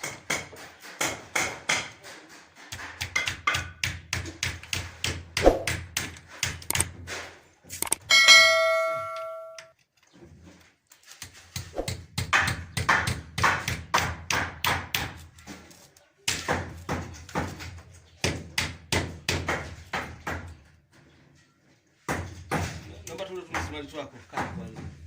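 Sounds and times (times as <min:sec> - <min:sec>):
metallic ringing tone: 0:08.0 - 0:09.7.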